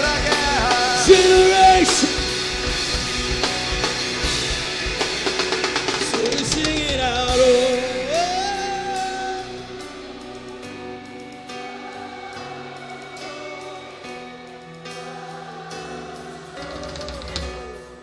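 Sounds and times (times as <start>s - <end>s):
drum kit: 0.0s - 18.0s
guitars: 0.0s - 18.0s
rock band playing: 0.0s - 18.0s.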